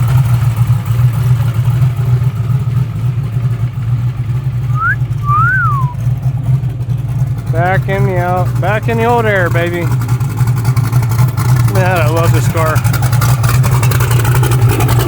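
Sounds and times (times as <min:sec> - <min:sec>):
car engine running low: 0:00.0 - 0:15.0
two-part whistle: 0:04.7 - 0:06.0
man talking: 0:07.5 - 0:09.9, 0:11.7 - 0:12.8.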